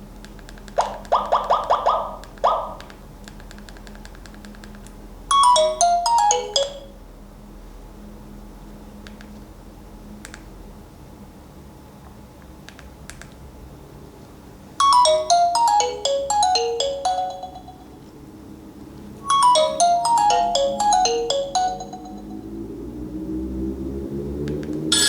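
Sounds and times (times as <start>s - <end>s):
bell-like ringtone melody: 5.3s - 7.0s, 14.8s - 18.1s, 19.2s - 22.8s
rising tone: 19.2s - 22.9s.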